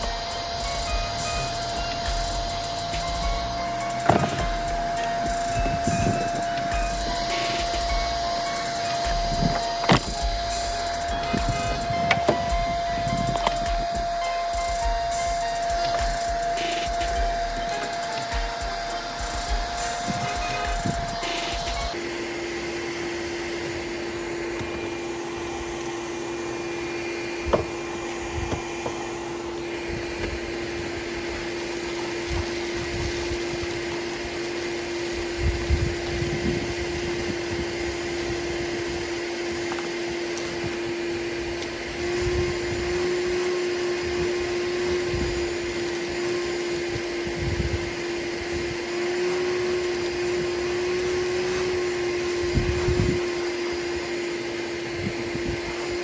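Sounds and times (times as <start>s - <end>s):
vacuum cleaner running: 0.0s - 56.0s.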